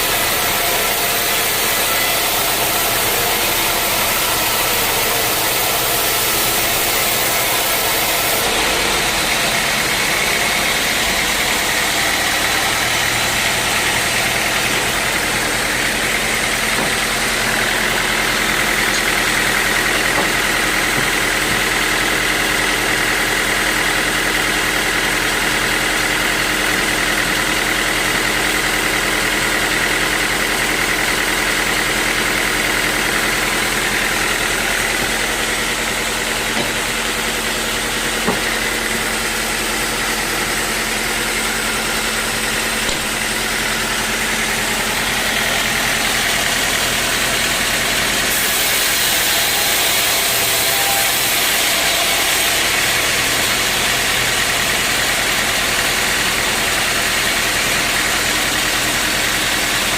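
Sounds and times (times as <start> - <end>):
sawmill machinery whine: 0.0 - 59.9.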